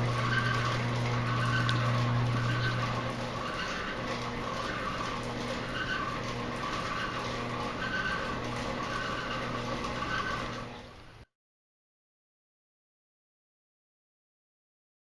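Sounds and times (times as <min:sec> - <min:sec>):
machinery humming: 0:00.0 - 0:11.2
faint repeating squeak: 0:00.2 - 0:10.6.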